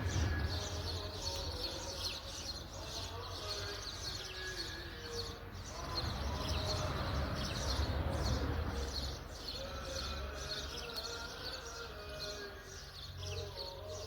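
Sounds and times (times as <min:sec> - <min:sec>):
low rumble: 0:00.0 - 0:01.3
small birds chirping: 0:00.0 - 0:14.0.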